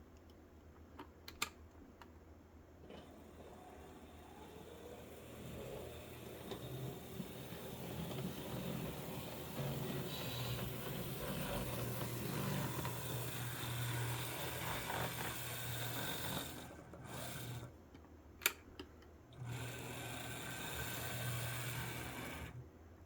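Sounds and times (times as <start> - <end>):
model train motor hum: 3.0 - 17.7, 19.4 - 22.6
wheels rubbing on rails: 3.0 - 17.7.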